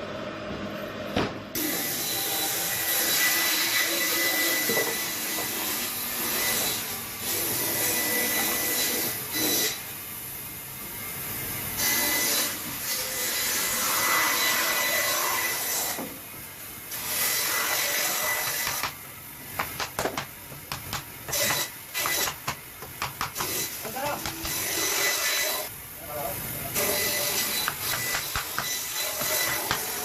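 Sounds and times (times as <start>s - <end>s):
woodworking tool rasping: 17.2s - 19.0s, 19.6s - 25.6s, 26.8s - 30.0s.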